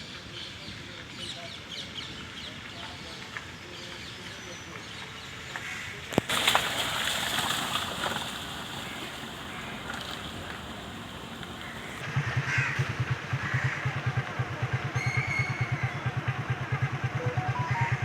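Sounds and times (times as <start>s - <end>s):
passing vehicles: 6.3s - 18.0s
short high tone: 17.2s - 18.0s.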